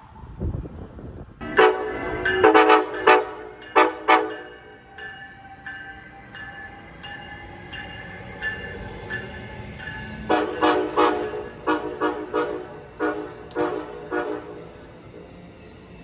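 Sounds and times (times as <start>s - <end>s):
train horn blasts: 1.4s - 4.8s, 10.3s - 14.7s.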